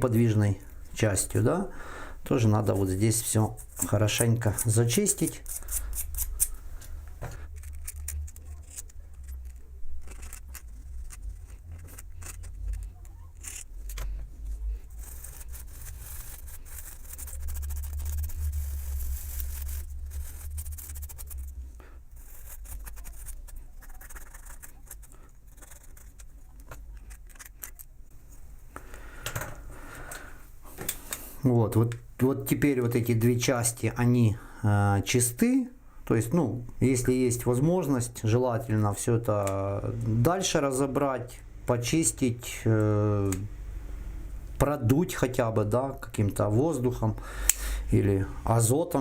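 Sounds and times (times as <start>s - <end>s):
sandpaper scraping on steel: 3.2s - 6.5s, 14.9s - 21.6s, 22.2s - 26.2s.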